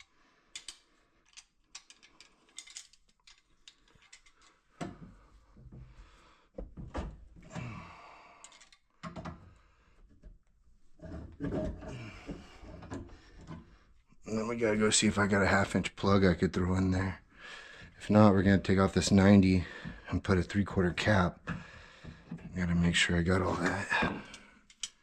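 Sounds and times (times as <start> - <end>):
tools and pipe fittings clicking: 0.0 - 5.0, 8.4 - 9.4, 24.1 - 25.0
rustling and scraping: 10.1 - 14.1.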